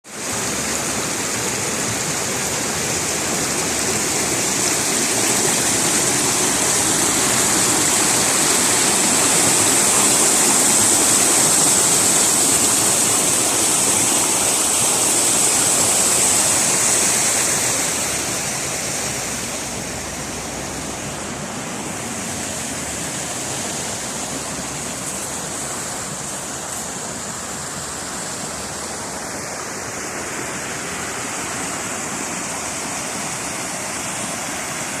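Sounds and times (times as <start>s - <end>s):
running water rushing: 0.0s - 35.0s.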